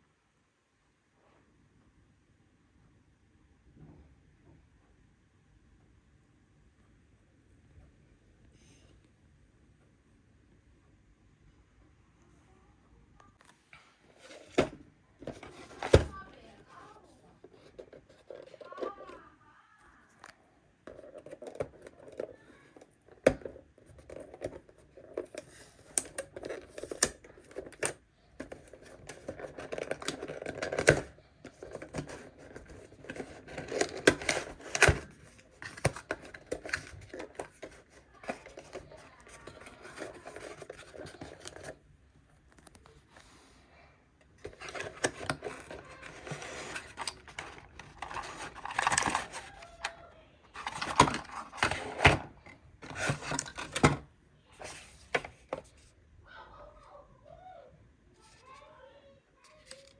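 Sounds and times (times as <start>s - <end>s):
scraping of computer parts: 44.4s - 49.9s, 50.5s - 54.0s
packaging rustling and tearing: 44.5s - 53.9s.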